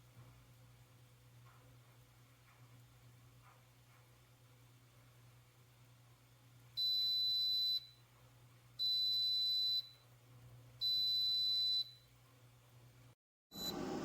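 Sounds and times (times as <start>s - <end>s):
coffee maker beeping: 13.5s - 14.0s.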